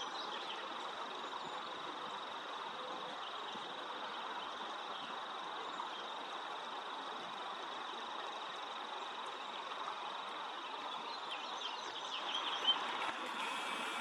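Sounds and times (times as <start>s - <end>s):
small birds chirping: 10.5s - 12.9s
steady hiss: 12.7s - 14.0s.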